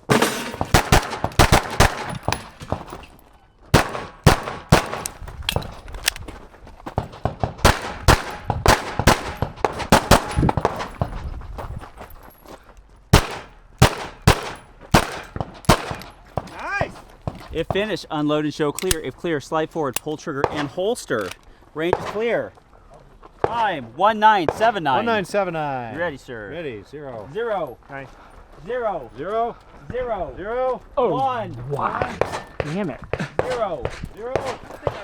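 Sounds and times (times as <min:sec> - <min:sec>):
pistol shots with echo: 0:00.1 - 0:03.1, 0:03.7 - 0:06.2, 0:07.5 - 0:11.1, 0:13.1 - 0:16.5, 0:32.0 - 0:35.0.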